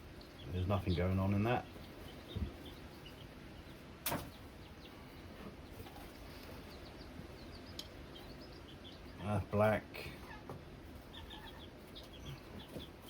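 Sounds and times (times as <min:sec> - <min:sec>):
faint high bird chirps: 0:00.1 - 0:09.4, 0:10.2 - 0:13.0.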